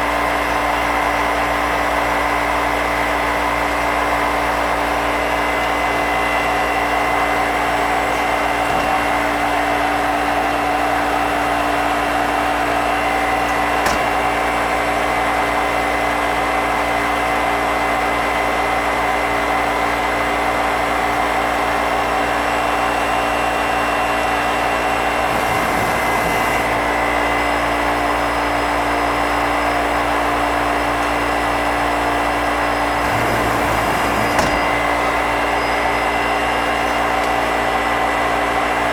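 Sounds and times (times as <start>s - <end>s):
machine whirring: 5.3s - 15.0s, 24.4s - 38.1s.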